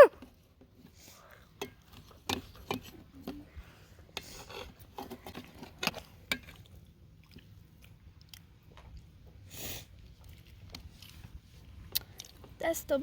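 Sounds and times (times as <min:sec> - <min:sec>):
people chewing crisp pizza: 0:00.8 - 0:12.6
short breathy hiss: 0:09.5 - 0:09.9.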